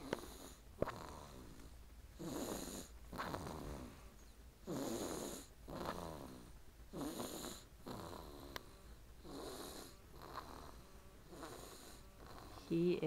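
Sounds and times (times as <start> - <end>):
baby snoring loudly: 0.0 - 1.6, 2.2 - 4.0, 4.6 - 12.8.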